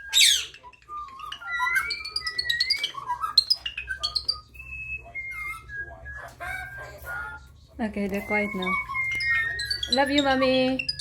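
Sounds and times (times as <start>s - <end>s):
parrots whistling and squawking: 0.0s - 11.0s.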